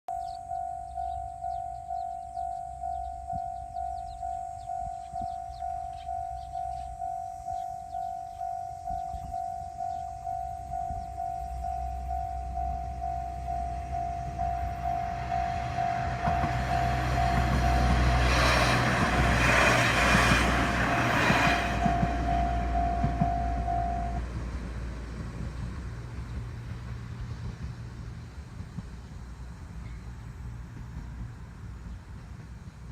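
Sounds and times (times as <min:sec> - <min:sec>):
level crossing alarm dinging: 0:00.1 - 0:19.4, 0:20.0 - 0:24.3
diesel railcar engine rumbling: 0:00.1 - 0:32.9.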